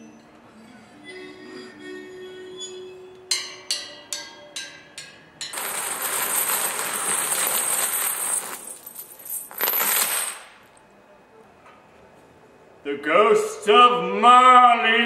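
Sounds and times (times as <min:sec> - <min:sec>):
metal chains rattling: 0:05.4 - 0:10.7.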